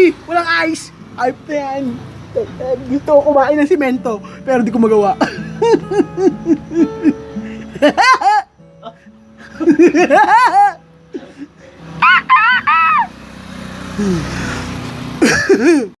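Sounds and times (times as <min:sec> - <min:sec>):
faint background music: 0:00.0 - 0:12.0
high-pitched laughter: 0:05.2 - 0:10.8, 0:12.0 - 0:13.1.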